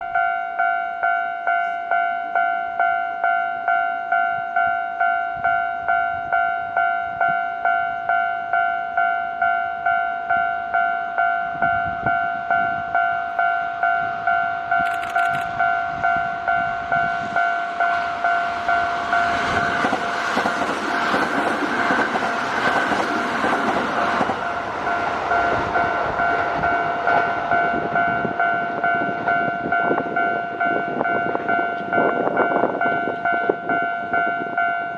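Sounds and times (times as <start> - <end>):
level-crossing warning bell ringing: 0.0 - 34.9
train rumbling past: 13.7 - 34.9.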